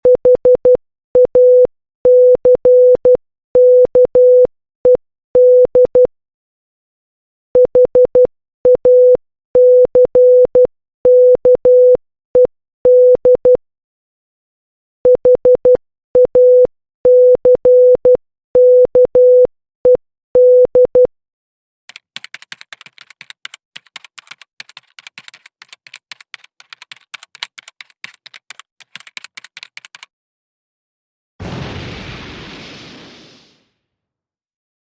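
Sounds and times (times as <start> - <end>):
rapid irregular clicking: 21.9 - 30.1.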